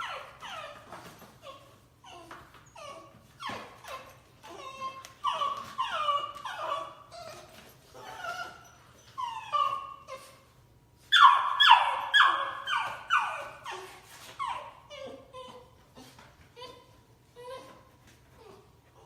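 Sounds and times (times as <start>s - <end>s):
dog yelping barks: 11.1s - 13.7s.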